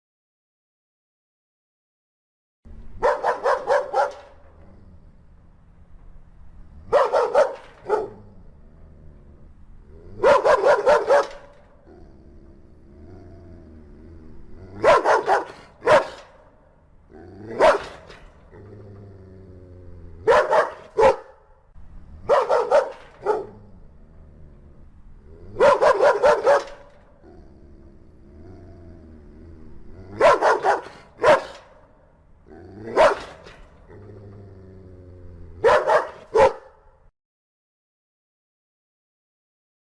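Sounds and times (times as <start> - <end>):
large dog barking: 3.0 - 4.6, 6.8 - 8.4, 10.1 - 12.0, 14.7 - 18.7, 20.2 - 21.6, 22.2 - 23.8, 25.5 - 27.4, 30.0 - 34.0, 35.5 - 37.0
dog growling: 3.0 - 5.4, 6.8 - 16.4, 17.0 - 21.2, 22.2 - 31.8, 32.4 - 36.6.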